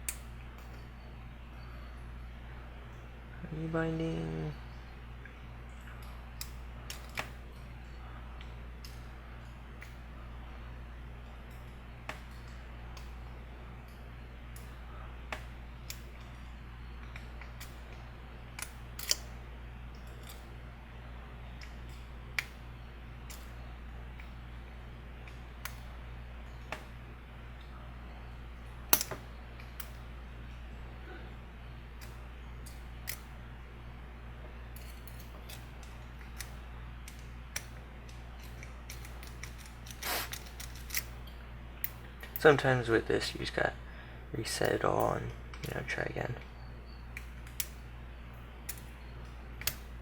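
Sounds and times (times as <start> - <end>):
steady low hum: 0.0 - 50.0
lock pick clicking and scraping: 18.6 - 19.3, 34.8 - 41.2, 49.6 - 49.9
lock pick clicking in padlock: 18.6 - 19.3, 38.4 - 41.1.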